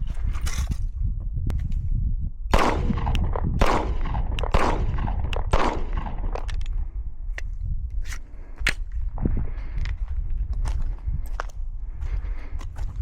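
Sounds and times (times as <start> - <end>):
pistol shots: 2.5 - 6.5.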